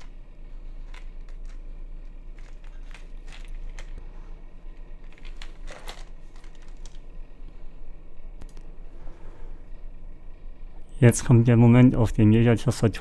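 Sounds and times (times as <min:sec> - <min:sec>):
small plastic clicks: 0:00.0 - 0:09.2
packaging crinkling: 0:00.0 - 0:09.8.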